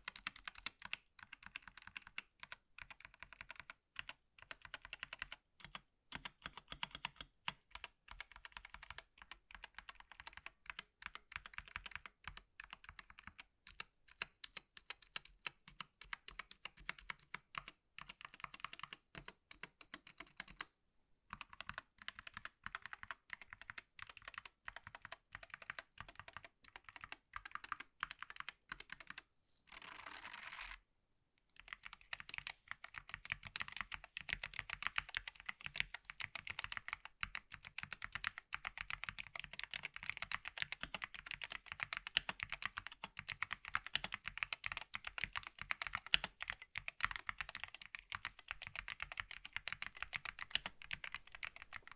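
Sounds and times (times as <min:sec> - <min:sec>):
keyboard keys clicking: 0:31.6 - 0:51.9.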